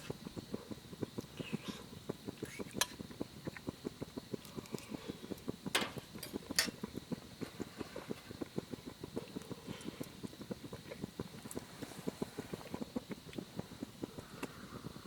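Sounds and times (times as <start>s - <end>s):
sharp pops of fire: 0.0s - 14.6s
wood fire crackling: 0.0s - 15.0s.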